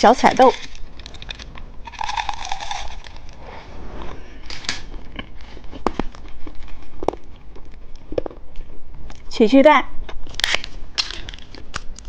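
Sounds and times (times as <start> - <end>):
plastic packaging crinkling: 0.4 - 3.3.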